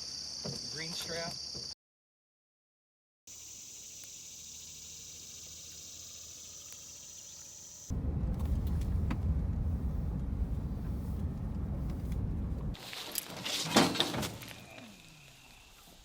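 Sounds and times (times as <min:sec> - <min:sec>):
truck driving rumble: 0:07.9 - 0:12.8
rustling and clattering: 0:10.7 - 0:14.6.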